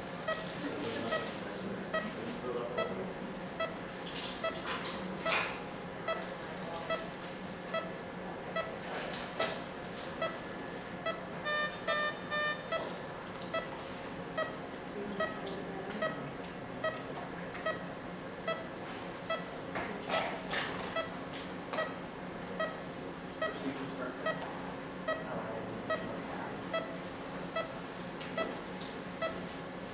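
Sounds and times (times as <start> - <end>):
equipment hum: 0.0 - 29.9
patient monitor pulse beeps: 0.2 - 19.6, 20.8 - 29.6
higher beeps: 11.0 - 12.9.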